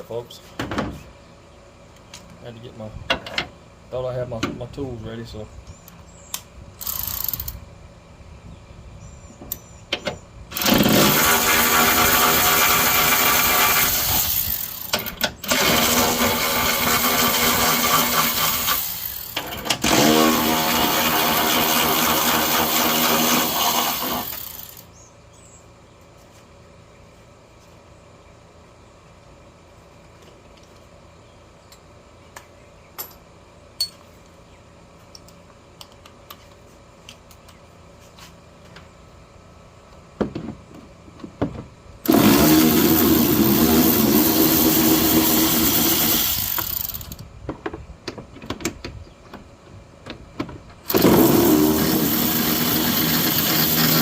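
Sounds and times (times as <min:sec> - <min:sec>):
motor running loudly: 0:10.5 - 0:24.9, 0:42.0 - 0:47.2, 0:50.9 - 0:54.0.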